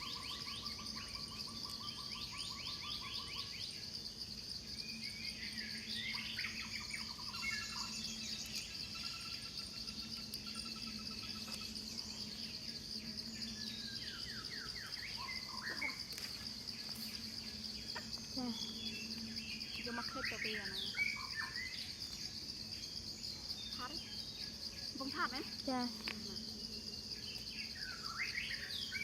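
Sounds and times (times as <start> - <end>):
high-pitched insect drone: 0.0 - 29.0
bird trills and chirps: 17.0 - 26.0.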